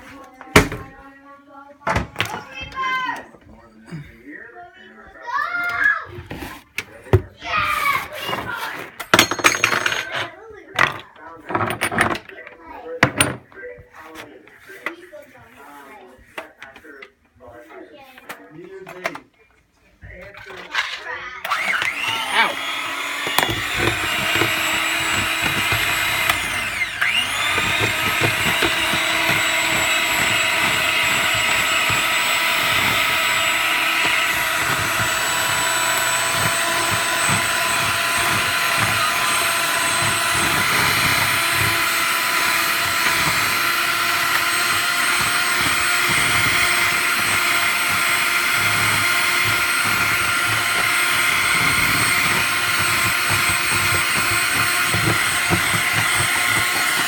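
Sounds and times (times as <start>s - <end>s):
motor whirring: 21.5s - 57.0s.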